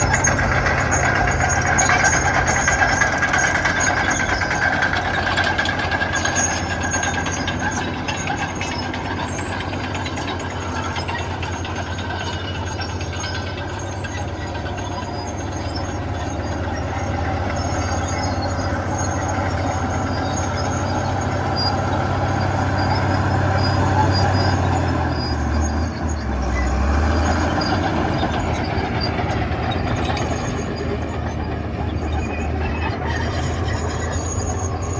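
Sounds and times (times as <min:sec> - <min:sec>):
bulldozer diesel engines droning: 0:00.0 - 0:34.9.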